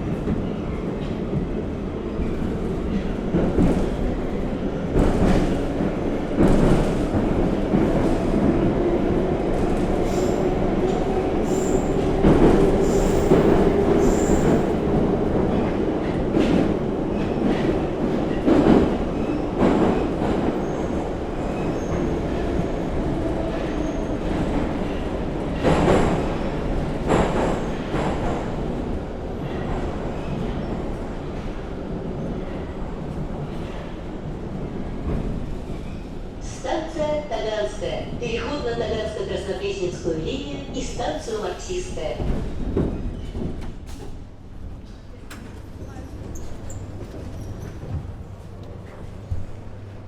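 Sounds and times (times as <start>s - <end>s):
train running noise: 0.0s - 31.6s.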